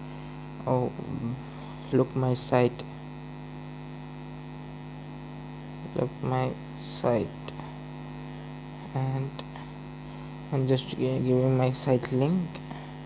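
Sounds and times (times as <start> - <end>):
electrical mains hum: 0.0 - 13.0
person speaking: 0.6 - 2.9, 5.8 - 7.7, 8.8 - 9.6, 10.5 - 12.8.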